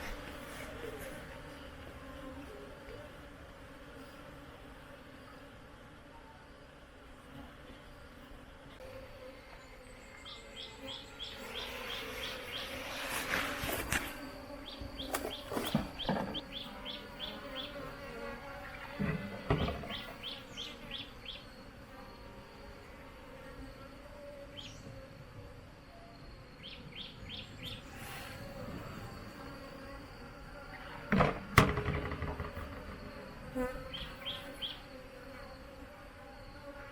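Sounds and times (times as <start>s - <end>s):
bees buzzing: 0.0s - 25.4s, 26.6s - 36.9s
bird chirping: 9.7s - 12.9s, 14.6s - 17.8s, 19.5s - 21.6s, 26.4s - 27.9s, 32.9s - 34.9s.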